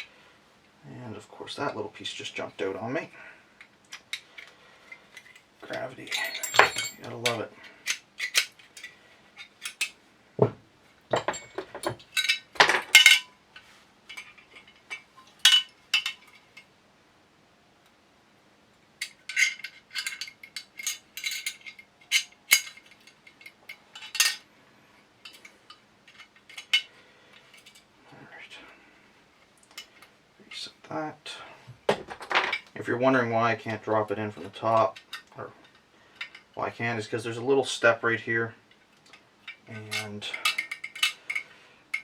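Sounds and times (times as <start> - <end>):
metal gun parts clicking: 3.6 - 10.0, 11.1 - 13.3, 14.1 - 16.7, 19.0 - 24.4, 25.2 - 27.8, 34.8 - 36.5, 38.7 - 42.0.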